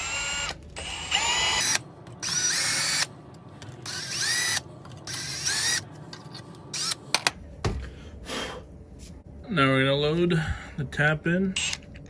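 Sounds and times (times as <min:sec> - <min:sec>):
power drill motor whine: 0:00.0 - 0:03.1, 0:03.8 - 0:05.8.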